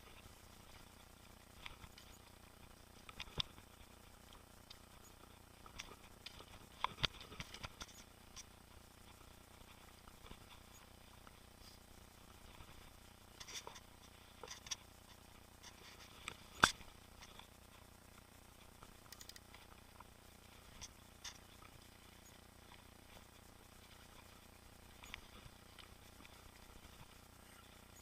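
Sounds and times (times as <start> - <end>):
bike clicks and rattles: 5.6 - 11.4, 12.5 - 17.8, 18.5 - 28.0.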